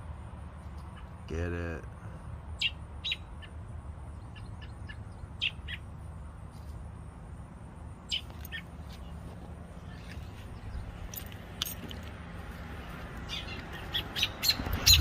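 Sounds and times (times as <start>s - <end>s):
small bird chirping: 2.6s - 6.8s, 7.8s - 11.9s, 13.2s - 15.0s.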